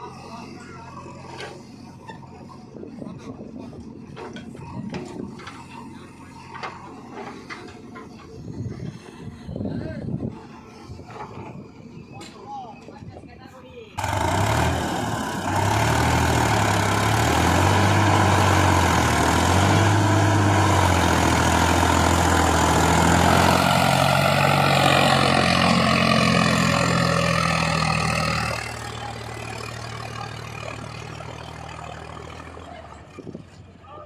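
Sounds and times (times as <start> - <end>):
heavy diesel engine running: 14.0 - 34.0.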